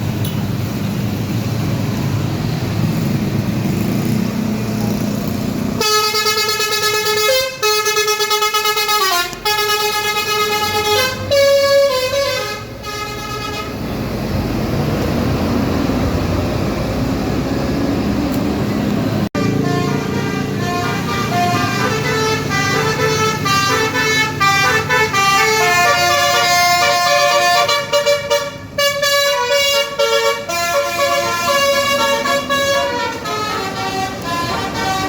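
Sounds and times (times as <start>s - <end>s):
bus engine and road noise: 0.0s - 35.0s
bus musical air horn melody: 5.8s - 14.0s, 19.3s - 35.0s.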